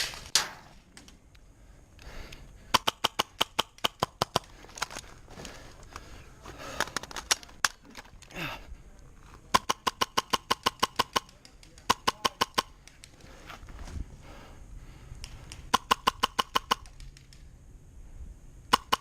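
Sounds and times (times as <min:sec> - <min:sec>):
airsoft gun rapid fire: 0:02.7 - 0:04.5, 0:09.5 - 0:13.0, 0:15.5 - 0:17.2, 0:18.7 - 0:19.0.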